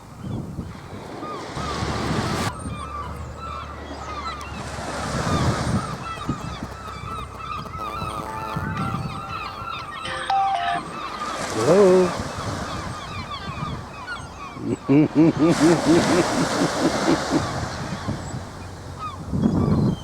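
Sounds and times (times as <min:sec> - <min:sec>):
waves washing: 0:00.7 - 0:02.5, 0:03.7 - 0:19.0
flock of birds honking: 0:02.5 - 0:14.8.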